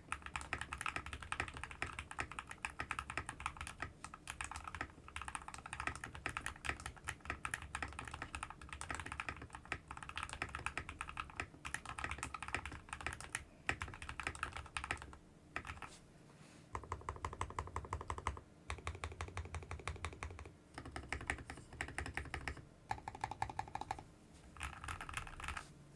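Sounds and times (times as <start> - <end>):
mechanical keyboard typing: 0.1 - 15.9, 16.8 - 24.0, 24.6 - 25.6.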